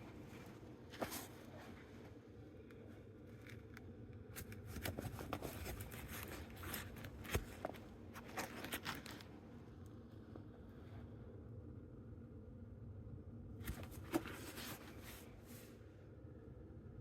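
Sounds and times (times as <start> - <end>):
handling rustles and clicks: 0.0 - 9.6, 13.6 - 15.6.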